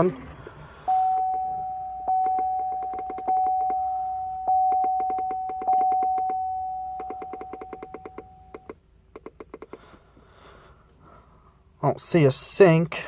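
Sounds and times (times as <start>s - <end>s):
electronic chime dinging: 0.9s - 8.7s
sharp clicks: 7.0s - 9.8s.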